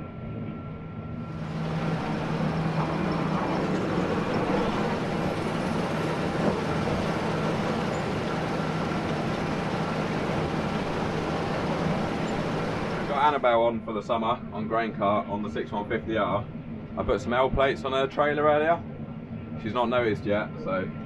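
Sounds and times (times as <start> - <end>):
combine harvester running: 1.3 - 13.5.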